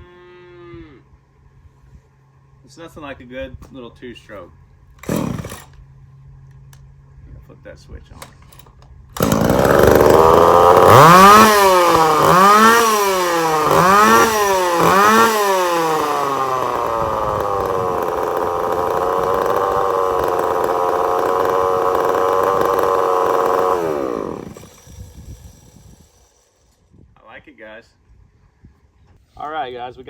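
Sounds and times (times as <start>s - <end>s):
chainsaw engine revving: 5.0s - 5.8s, 9.2s - 26.7s.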